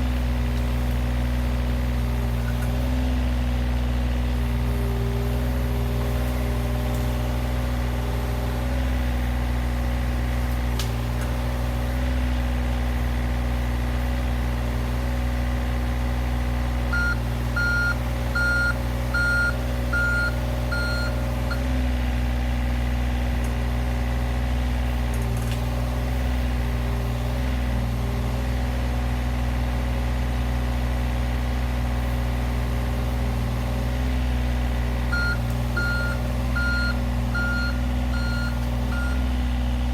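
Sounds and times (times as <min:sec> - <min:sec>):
excavator diesel engine running: 0:00.0 - 0:39.9
travel alarm beeps: 0:16.9 - 0:21.7, 0:35.1 - 0:39.3.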